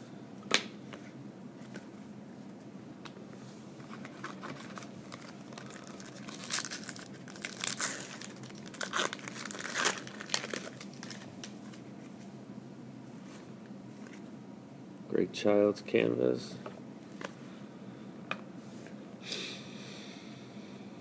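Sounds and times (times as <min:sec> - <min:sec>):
wrapper crinkling and tearing: 0:03.8 - 0:11.8.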